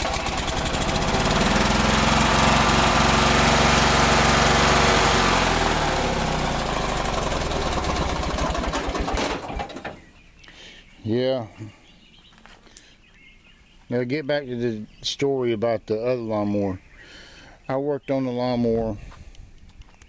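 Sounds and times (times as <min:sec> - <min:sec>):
riding lawnmower engine running: 0:00.0 - 0:10.2.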